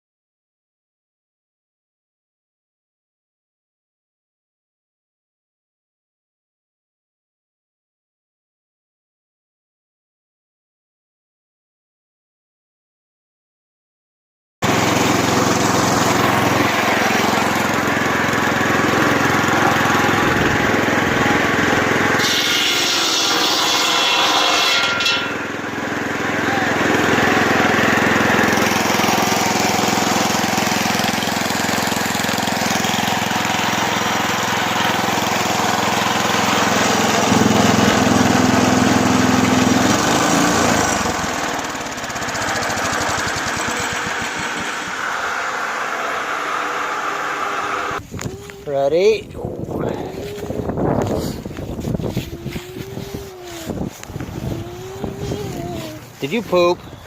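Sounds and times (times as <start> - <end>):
engine-driven saw running: 14.6 - 48.0, 50.1 - 57.0.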